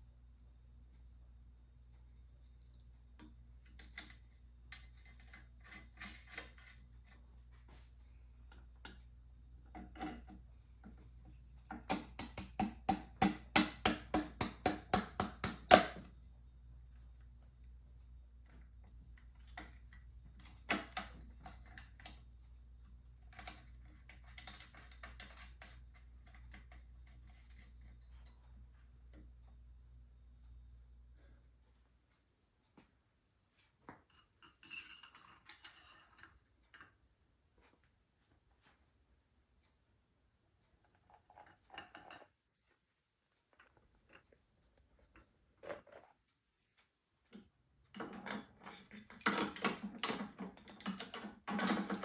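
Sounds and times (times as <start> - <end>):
hand tools knocking on metal: 11.7 - 15.9.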